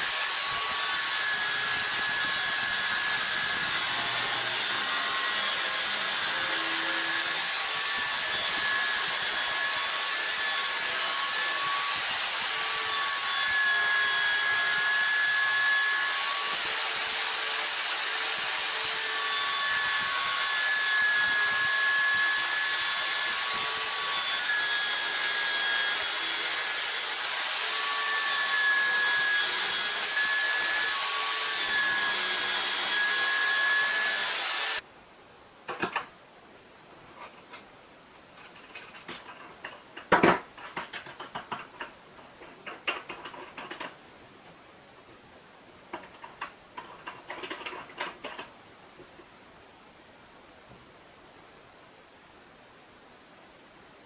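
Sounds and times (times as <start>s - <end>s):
power tool cutting wood: 0.0s - 34.8s.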